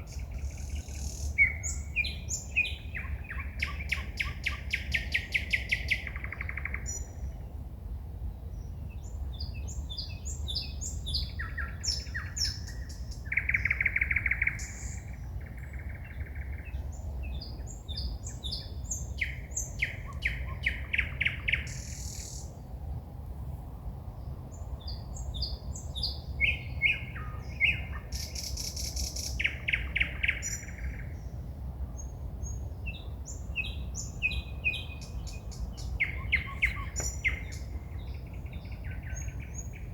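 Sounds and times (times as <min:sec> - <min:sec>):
songbird singing: 0:00.0 - 0:23.1, 0:23.8 - 0:39.9.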